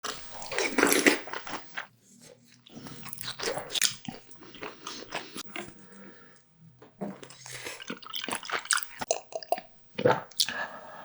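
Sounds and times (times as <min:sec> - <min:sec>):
crisp biting and chewing: 0:00.4 - 0:01.9
wet mouth sounds: 0:07.1 - 0:10.7.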